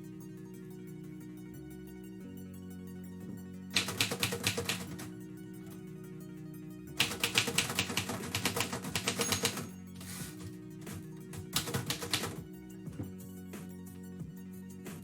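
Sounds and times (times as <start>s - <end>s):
background music: 0.0s - 15.0s
typewriter keys striking: 3.8s - 5.1s, 7.0s - 10.2s, 11.4s - 12.4s.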